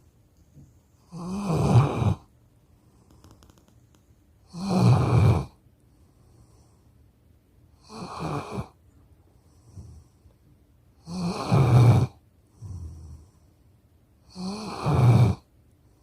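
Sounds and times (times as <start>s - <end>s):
dog snoring: 1.0s - 3.7s, 4.4s - 6.8s, 7.8s - 8.8s, 9.4s - 10.2s, 11.0s - 13.5s, 14.2s - 15.5s.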